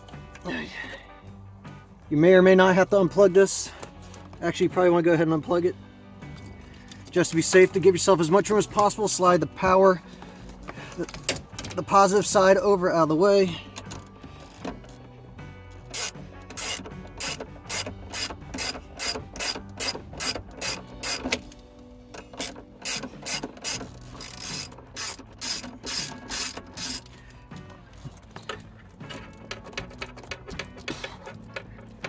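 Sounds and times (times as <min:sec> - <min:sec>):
ratchet wrench clicking: 0:15.8 - 0:21.6, 0:22.2 - 0:27.2.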